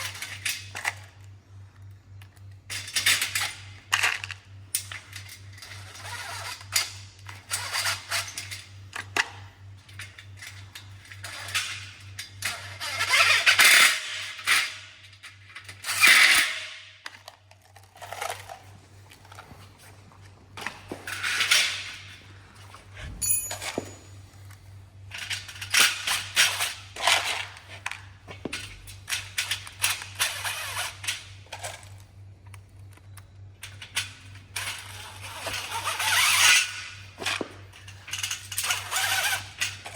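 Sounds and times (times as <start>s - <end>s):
metal parts clicking and clinking: 23.0s - 39.9s.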